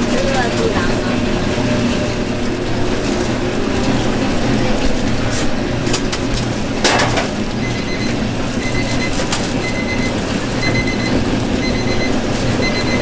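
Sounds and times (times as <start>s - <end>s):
food stall background noise: 0.0s - 13.0s.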